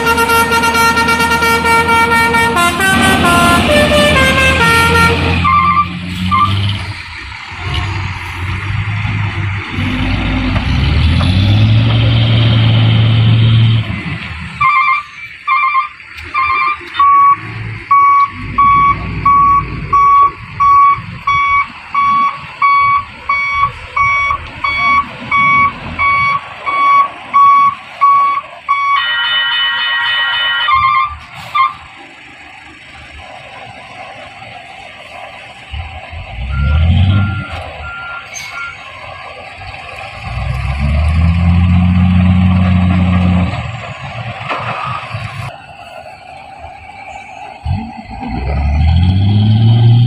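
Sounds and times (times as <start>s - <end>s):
horn chord: 0.0s - 5.6s
deep horn blast: 0.0s - 6.7s
high horn beeping: 0.0s - 6.8s, 14.6s - 31.9s.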